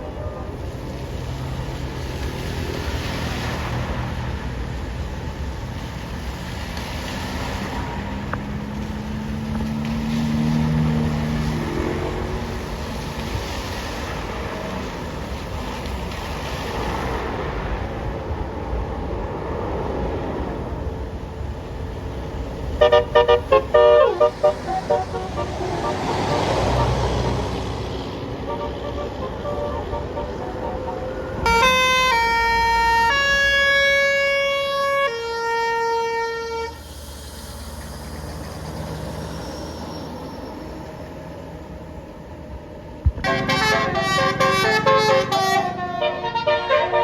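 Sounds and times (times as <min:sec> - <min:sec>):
heavy vehicle engine drone: 0:00.0 - 0:47.0
road traffic passing: 0:00.0 - 0:47.0
bus horn playing a tune: 0:22.8 - 0:36.8, 0:43.2 - 0:47.0.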